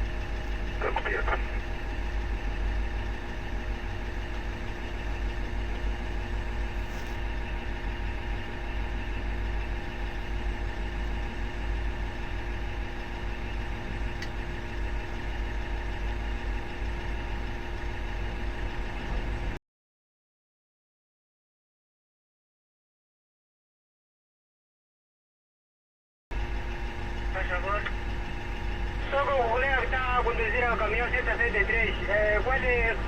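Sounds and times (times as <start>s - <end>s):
diesel engine rumbling: 0.0s - 19.6s, 26.4s - 33.0s.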